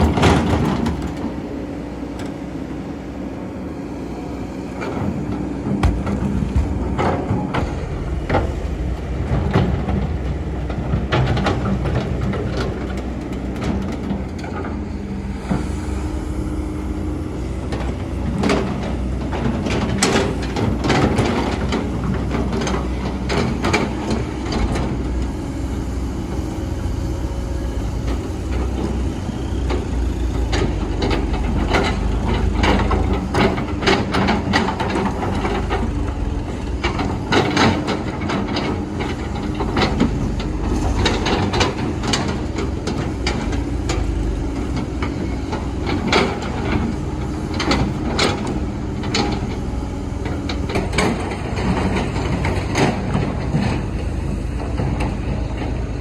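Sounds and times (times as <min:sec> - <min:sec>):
excavator engine running: 0:00.0 - 0:56.0
bucket knocking and scraping: 0:05.8 - 0:12.0.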